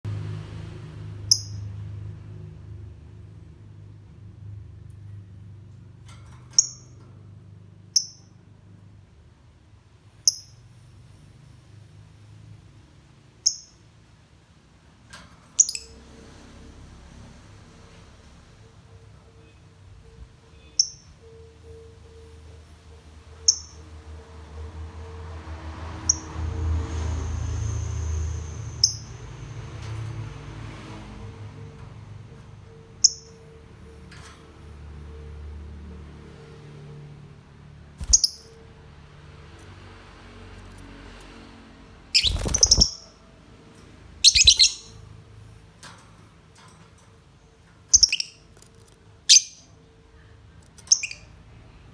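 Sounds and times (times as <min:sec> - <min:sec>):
lovebird chirping: 0:01.3 - 0:01.6, 0:15.6 - 0:16.0, 0:20.5 - 0:22.4, 0:23.3 - 0:23.9, 0:27.4 - 0:29.2, 0:33.0 - 0:33.6, 0:38.0 - 0:38.6, 0:42.1 - 0:43.2, 0:44.2 - 0:45.1, 0:47.9 - 0:48.6, 0:49.2 - 0:49.8, 0:50.8 - 0:51.4.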